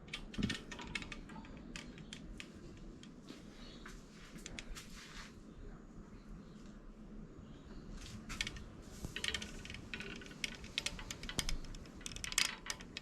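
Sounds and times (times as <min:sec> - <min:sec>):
small clicks and taps: 0:00.0 - 0:03.4
handling noise of wooden speargun: 0:08.0 - 0:13.0.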